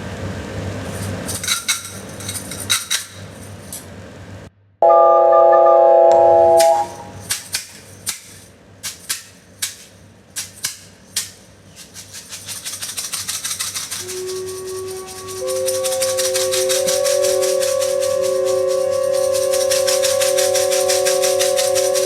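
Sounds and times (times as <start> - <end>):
shaker-like rattle: 0.8 - 3.9, 6.6 - 22.0
soft recorder note: 4.8 - 7.1.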